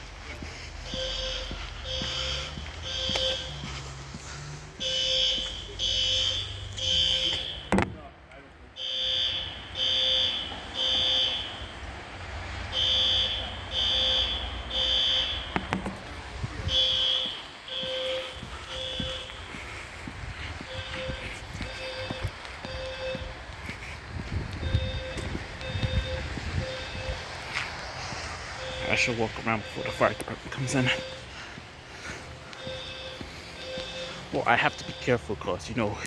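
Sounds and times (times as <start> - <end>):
fire alarm beeping: 0.9 - 3.8, 4.8 - 7.8, 8.8 - 11.7, 12.7 - 15.6, 16.6 - 19.4, 20.7 - 23.3, 24.6 - 27.3, 28.6 - 31.3, 32.5 - 35.4.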